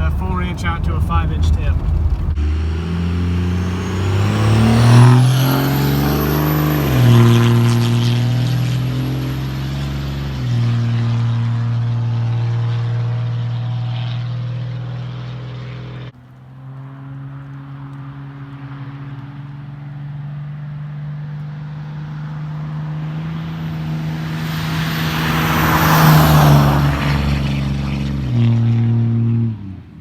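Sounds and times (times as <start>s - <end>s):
rising turbo whistle: 0.0s - 10.8s
deep diesel exhaust drone: 0.0s - 30.0s.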